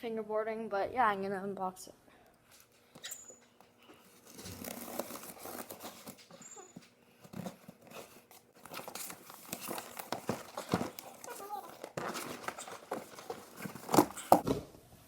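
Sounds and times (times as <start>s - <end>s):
cardboard box rustling and crinkling: 4.1s - 14.4s.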